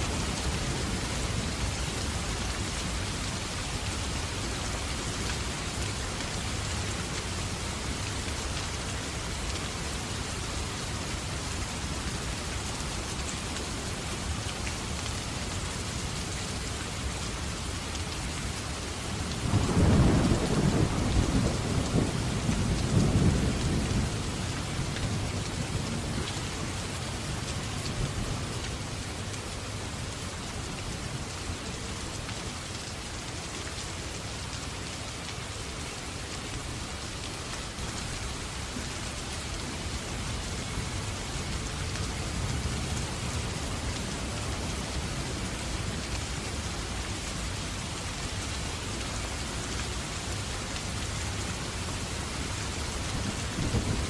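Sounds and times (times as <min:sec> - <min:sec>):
steady rain: 0:00.0 - 0:54.0
thunder rumbling: 0:19.4 - 0:24.2.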